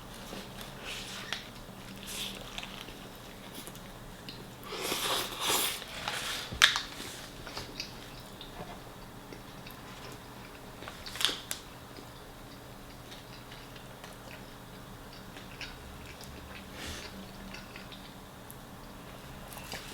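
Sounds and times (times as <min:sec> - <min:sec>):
chewing: 0:00.2 - 0:19.9.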